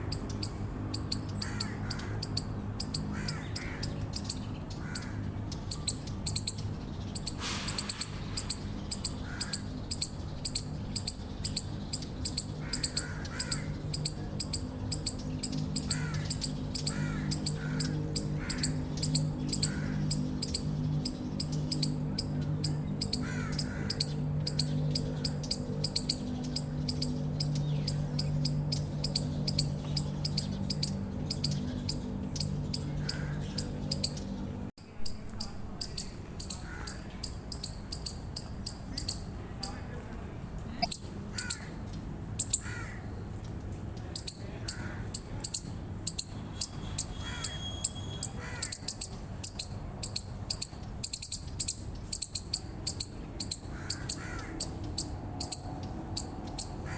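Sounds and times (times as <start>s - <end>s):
soft bird calls: 0.0s - 56.9s
chipmunk chip call: 0.1s - 34.2s, 34.9s - 39.8s, 40.7s - 43.0s, 44.0s - 56.9s.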